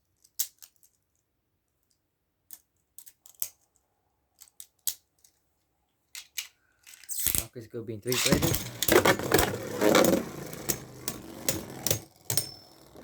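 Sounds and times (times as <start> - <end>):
plastic spinning tops clashing: 8.1 - 13.0.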